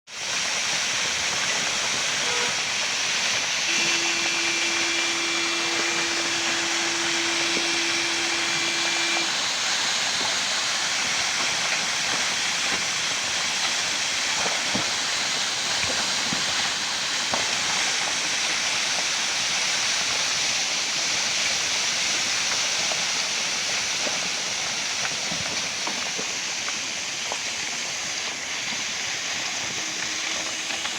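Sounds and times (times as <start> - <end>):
rainwater rushing: 0.1 - 30.9
steady tone: 3.7 - 9.4, 29.5 - 30.9.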